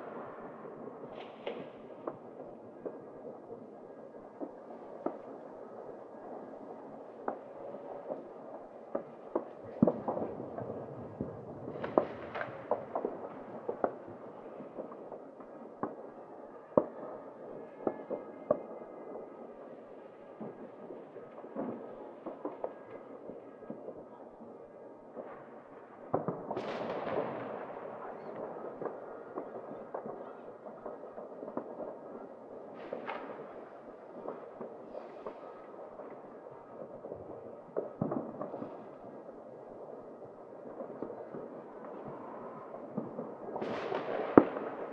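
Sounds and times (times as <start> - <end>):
distant fireworks rumble: 0.0 - 44.9.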